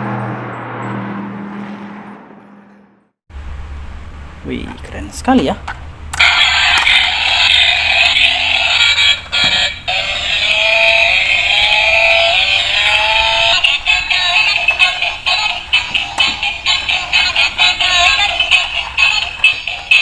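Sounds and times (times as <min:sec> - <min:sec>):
tinny electronic toy music: 0:06.1 - 0:20.0.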